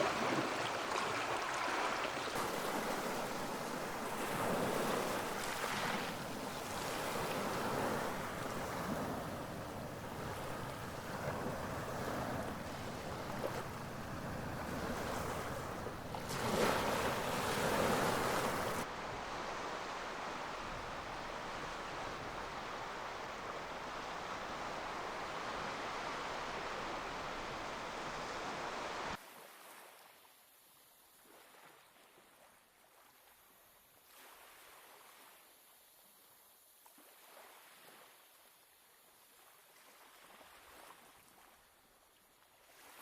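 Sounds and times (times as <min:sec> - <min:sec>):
waves washing on shore: 0:00.0 - 0:29.2.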